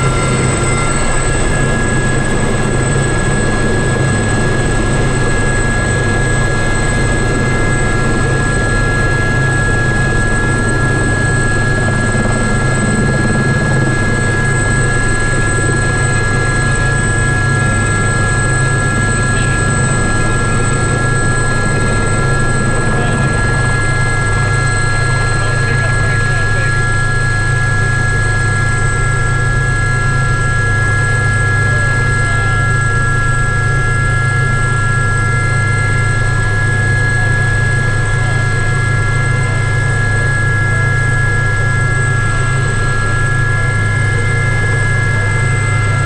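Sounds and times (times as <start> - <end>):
high thin whines: 0.0 - 8.4
helicopter engine and rotors: 0.0 - 46.0.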